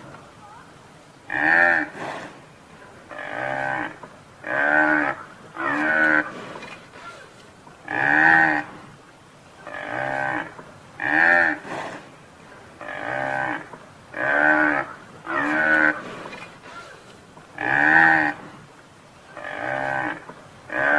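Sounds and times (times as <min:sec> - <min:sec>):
buffalo bellowing: 0:03.0 - 0:08.8, 0:09.6 - 0:12.1, 0:12.8 - 0:18.5, 0:19.3 - 0:20.9.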